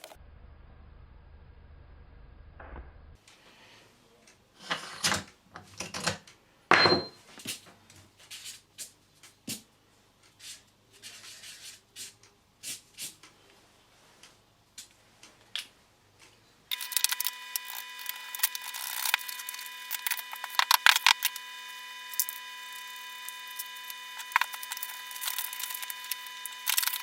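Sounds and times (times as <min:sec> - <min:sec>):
hard objects scraping: 0:16.7 - 0:27.0.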